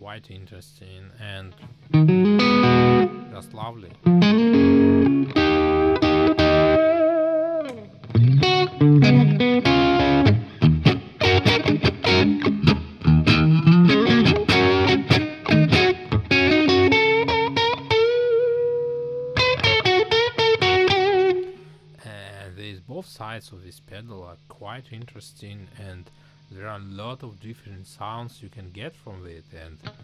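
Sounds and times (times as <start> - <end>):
overdriven electric guitar: 1.7 - 21.7.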